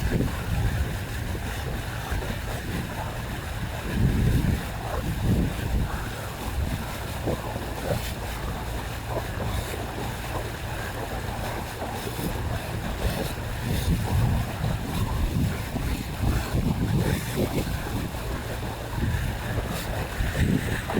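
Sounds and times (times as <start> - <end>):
boat engine rumble: 0.0 - 20.9
water noise: 0.0 - 20.9
wind buffeting microphone: 0.0 - 20.9.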